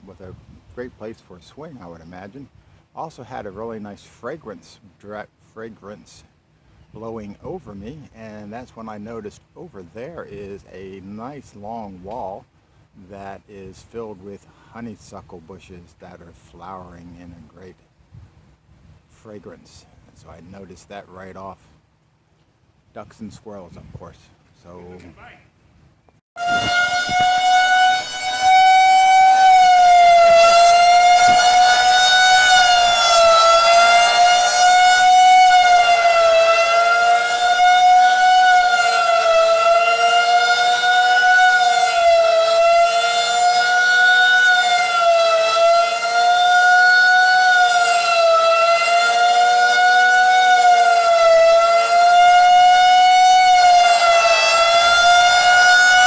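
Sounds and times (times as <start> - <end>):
warning siren wailing: 26.4 - 56.0.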